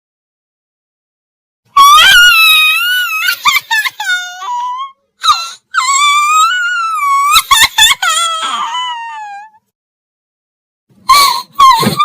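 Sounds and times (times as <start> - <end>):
high-pitched cartoon crying: 1.7 - 9.6.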